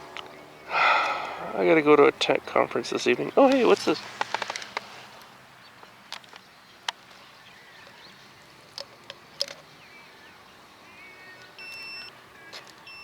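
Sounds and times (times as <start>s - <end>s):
handling clicks and taps: 3.4s - 4.9s, 8.6s - 9.7s.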